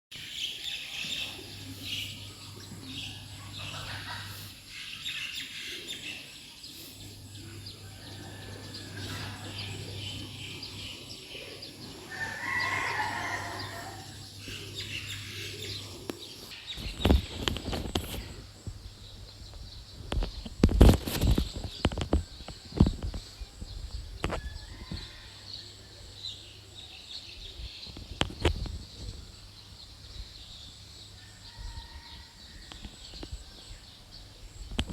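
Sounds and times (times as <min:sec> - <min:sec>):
small birds chirping: 0:00.1 - 0:25.2
chickens clucking: 0:00.4 - 0:18.3
rooster crowing: 0:07.1 - 0:16.1, 0:24.4 - 0:25.8, 0:31.2 - 0:33.0.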